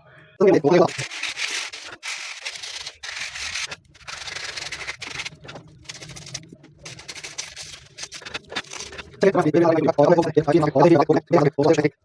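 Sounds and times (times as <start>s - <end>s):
scraping small motor parts: 0.8s - 9.6s.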